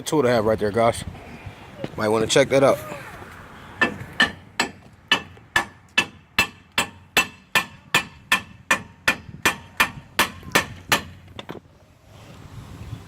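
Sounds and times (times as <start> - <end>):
hammer striking metal: 3.8 - 11.2.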